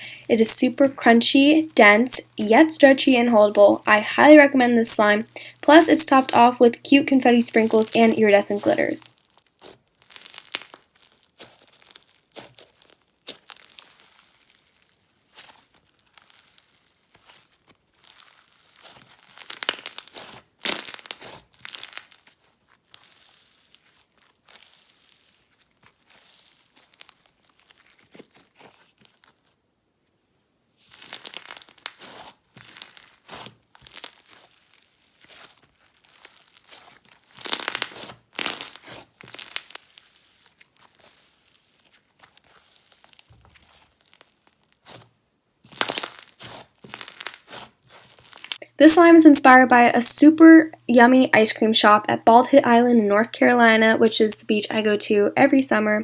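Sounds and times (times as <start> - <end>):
crunchy slime crackling: 7.6 - 29.4, 30.9 - 45.1, 45.7 - 48.7.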